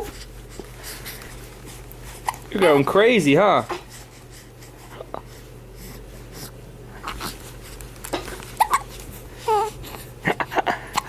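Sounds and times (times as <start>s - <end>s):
baby hiccups: 8.6s - 8.8s
baby squeaky vocal sounds: 8.6s - 8.9s.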